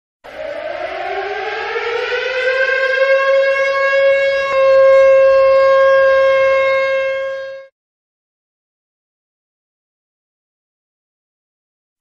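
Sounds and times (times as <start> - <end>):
warning siren winding up: 0.3 - 7.7.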